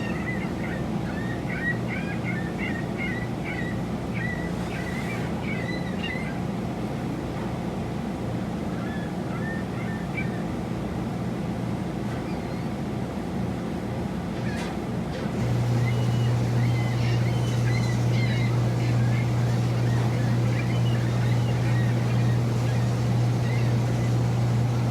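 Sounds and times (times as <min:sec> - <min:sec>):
low mechanical hum: 0:00.0 - 0:24.9
birds chirping: 0:15.4 - 0:24.9.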